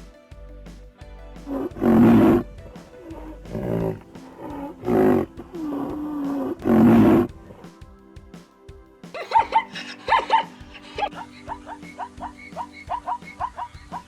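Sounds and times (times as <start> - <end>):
background music: 0.0 - 14.0
tiger moaning calls: 1.5 - 2.4, 3.2 - 7.3
tiger roaring: 1.5 - 2.4, 3.2 - 7.3.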